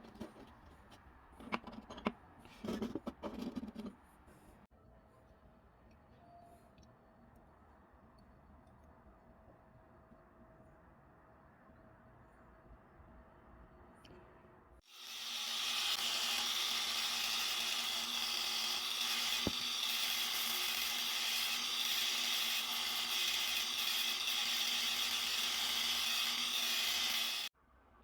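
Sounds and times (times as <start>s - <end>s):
power tool running: 14.9s - 27.5s.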